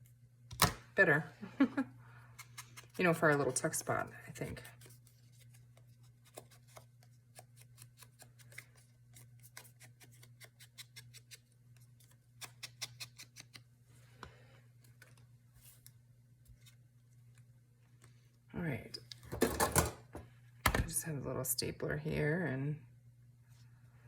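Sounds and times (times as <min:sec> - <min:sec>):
steady low hum: 0:00.0 - 0:09.5
scissors cutting paper: 0:02.4 - 0:05.0, 0:12.0 - 0:13.6.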